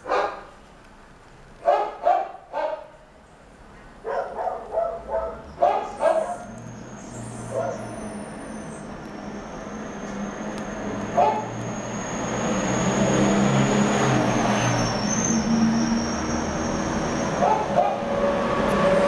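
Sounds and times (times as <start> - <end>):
dog barking in short yips: 0.1 - 0.5, 1.6 - 2.9, 4.1 - 6.5.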